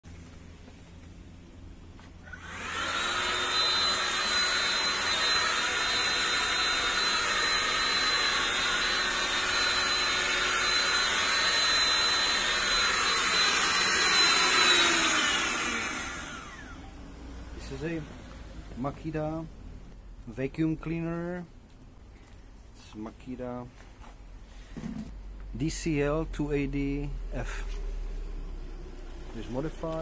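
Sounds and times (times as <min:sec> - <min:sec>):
vacuum motor whining: 0:02.0 - 0:18.8.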